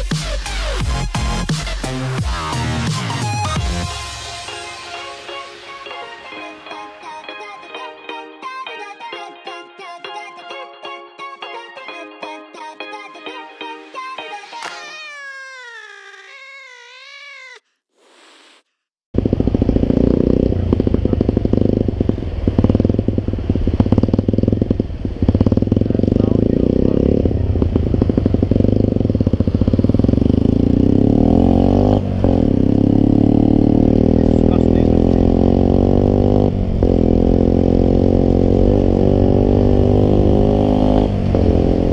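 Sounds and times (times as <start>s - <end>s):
cat meowing: 14.6s - 17.8s
small motorcycle engine running: 19.2s - 41.9s.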